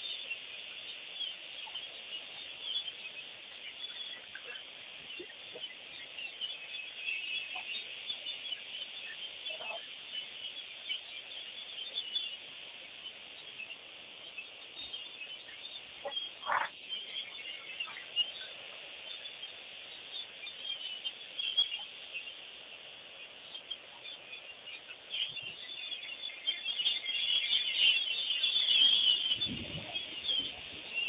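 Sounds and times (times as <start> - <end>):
louder lower bird calls: 0.0 - 22.6
birds chattering with high chirps: 0.0 - 31.0.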